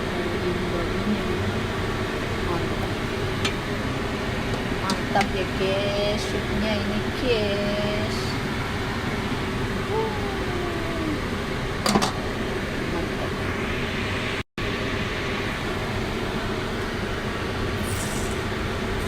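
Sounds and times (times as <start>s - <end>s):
fan-like rushing hum: 0.0s - 19.0s.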